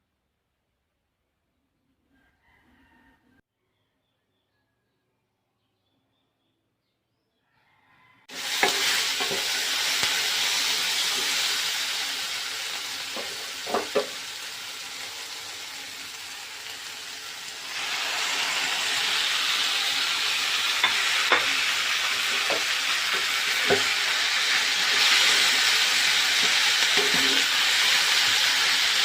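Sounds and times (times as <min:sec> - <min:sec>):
food sizzling in hot oil: 0:08.3 - 0:29.0
stirring knocks: 0:13.1 - 0:14.2.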